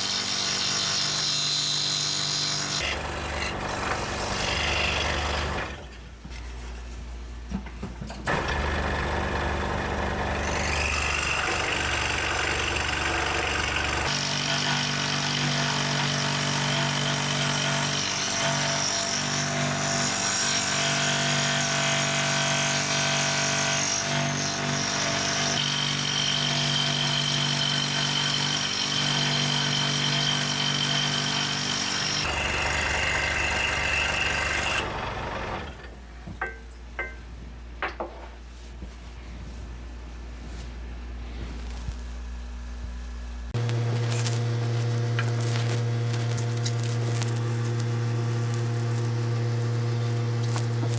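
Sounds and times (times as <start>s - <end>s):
woodworking power tools humming: 0.0s - 6.0s, 8.2s - 37.2s, 40.8s - 50.9s.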